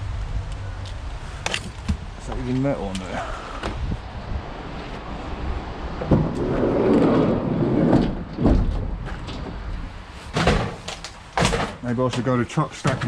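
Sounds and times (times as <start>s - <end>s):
dragging and scraping: 6.0s - 13.0s
dull knocks of scrap items: 10.3s - 12.2s.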